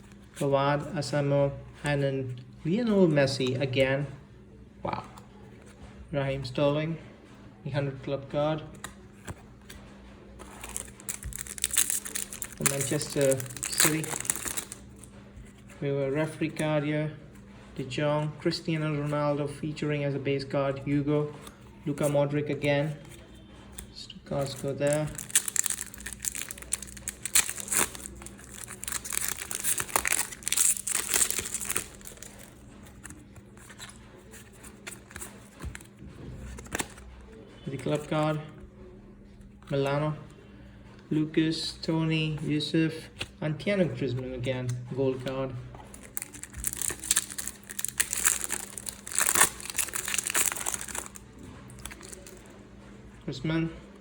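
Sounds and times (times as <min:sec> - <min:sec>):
wrapper crinkling and tearing: 0:10.4 - 0:15.1, 0:24.4 - 0:35.9, 0:45.9 - 0:52.5
wrapper rustling: 0:10.4 - 0:15.1, 0:24.3 - 0:35.9, 0:45.9 - 0:52.5.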